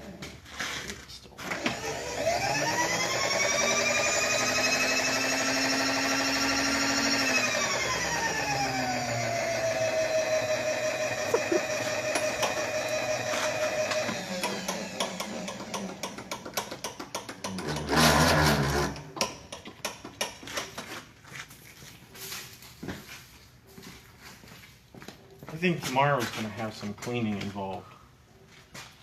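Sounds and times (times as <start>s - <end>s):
machine tool motor whining: 1.5s - 19.2s.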